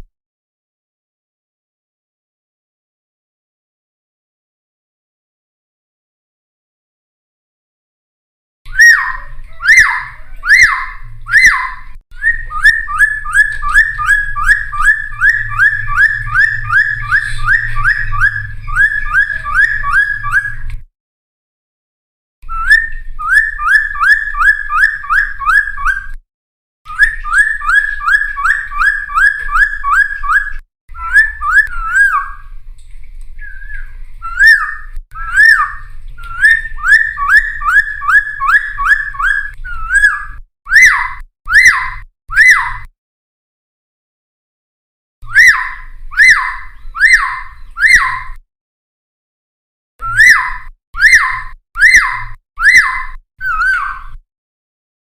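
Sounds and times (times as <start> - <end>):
bird whistling song: 8.7 - 20.8, 22.4 - 26.2, 26.9 - 32.6, 33.4 - 42.9, 45.2 - 48.4, 50.0 - 54.2.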